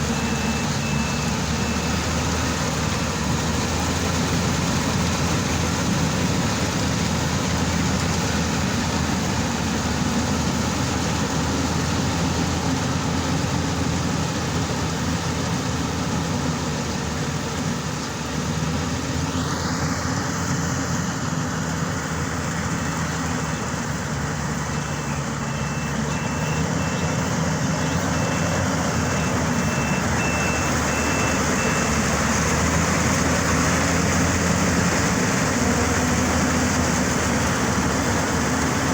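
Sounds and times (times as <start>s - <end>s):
high warning beeps: 0.0s - 2.4s, 24.6s - 32.1s
combine harvester running: 0.0s - 38.9s.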